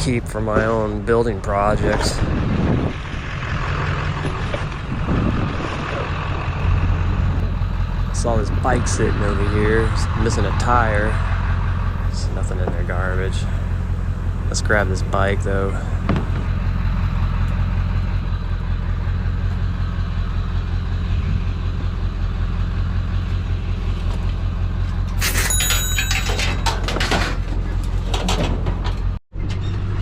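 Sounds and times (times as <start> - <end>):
vehicle engine idling: 0.0 - 25.2
bicycle frame clanking and rattling: 24.9 - 29.7.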